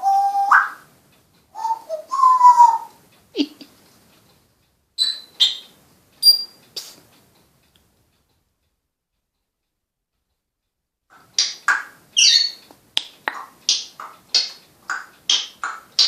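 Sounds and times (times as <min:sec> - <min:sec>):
high chirps: 0:05.0 - 0:06.6, 0:11.2 - 0:12.7.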